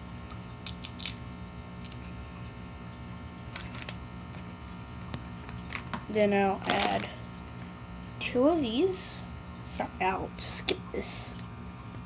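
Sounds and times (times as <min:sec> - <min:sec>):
plastic toy bricks clicking together: 0:06.6 - 0:07.1.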